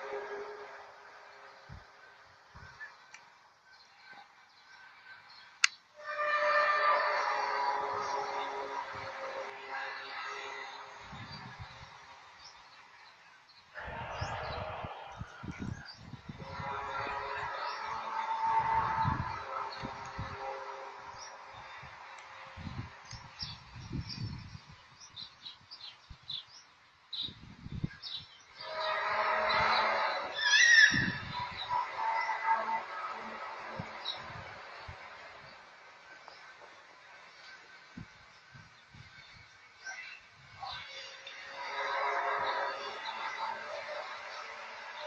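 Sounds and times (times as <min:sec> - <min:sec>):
horn-like droning tone: 0:00.0 - 0:12.8, 0:13.8 - 0:25.3, 0:27.9 - 0:45.0
loud trumpet-like tone: 0:06.0 - 0:11.8, 0:13.8 - 0:21.9, 0:28.6 - 0:35.1.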